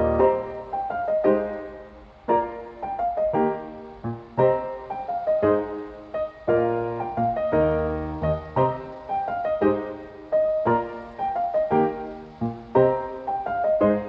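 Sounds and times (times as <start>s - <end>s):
gentle piano music: 0.0s - 14.0s.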